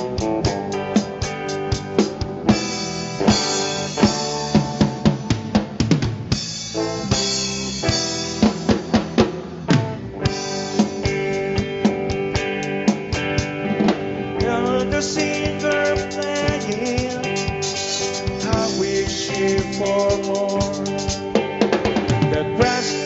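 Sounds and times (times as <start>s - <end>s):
drum kit beat: 0.0s - 23.0s
instrumental rock music: 0.0s - 23.0s.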